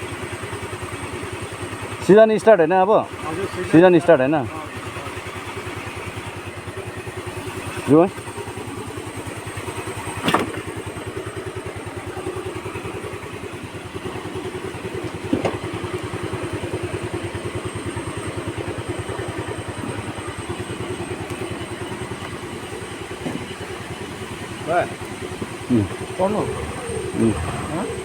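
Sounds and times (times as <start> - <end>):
scooter engine running: 0.0 - 28.0.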